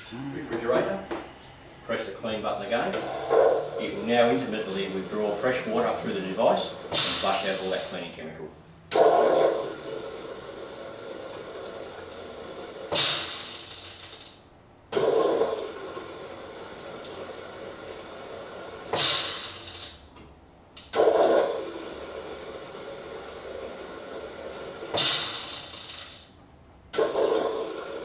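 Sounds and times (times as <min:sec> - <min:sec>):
coffee machine rinse water rushing: 0:02.9 - 0:08.1, 0:08.9 - 0:20.0, 0:20.9 - 0:26.2, 0:26.9 - 0:28.0
hiss of rinse cycle: 0:03.0 - 0:08.1, 0:08.8 - 0:14.4, 0:15.0 - 0:20.1, 0:21.0 - 0:26.3.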